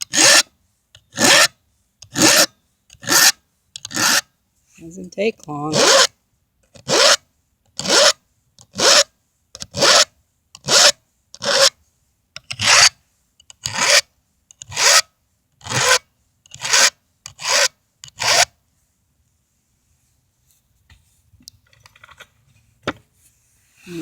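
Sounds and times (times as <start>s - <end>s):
hand file rasping on chain: 0.0s - 4.2s, 5.7s - 6.1s, 6.8s - 7.2s, 7.8s - 11.8s, 12.5s - 13.0s, 13.6s - 14.0s, 14.6s - 15.0s, 15.6s - 18.5s.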